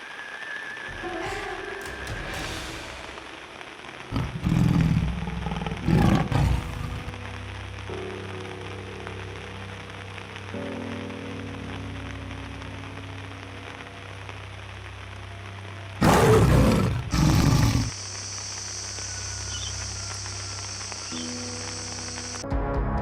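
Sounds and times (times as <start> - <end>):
rain pattering: 0.0 - 22.4
tiger roaring: 4.1 - 7.1, 16.0 - 18.0
low music drone: 17.7 - 23.0.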